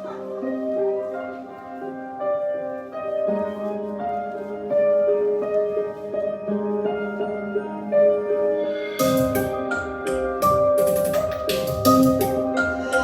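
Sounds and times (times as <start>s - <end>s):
held keyboard notes melody: 0.0s - 13.0s
faint beat: 9.0s - 13.0s.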